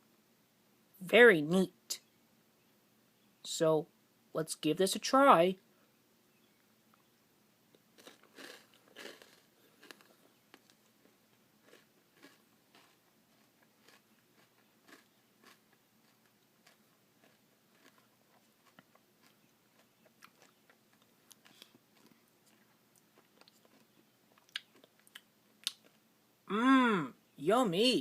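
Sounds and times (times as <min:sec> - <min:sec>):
chewing crunchy food: 0:07.7 - 0:26.1.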